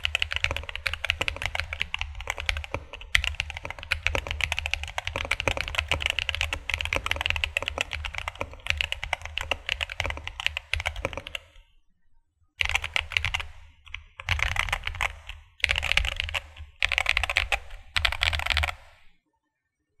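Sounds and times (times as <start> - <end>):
mechanical keyboard typing: 0.0 - 11.7, 12.6 - 19.1.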